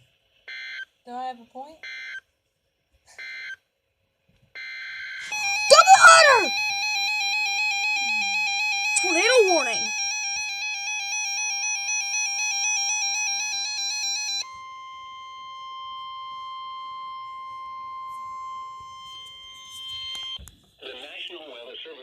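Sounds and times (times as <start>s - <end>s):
warbling two-pitch electronic alarm: 5.2s - 20.3s.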